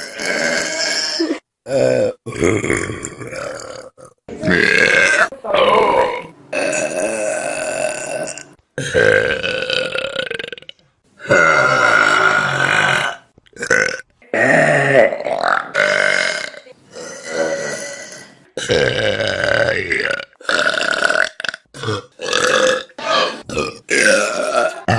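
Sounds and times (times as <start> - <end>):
people burping loudly: 0.0 - 24.9.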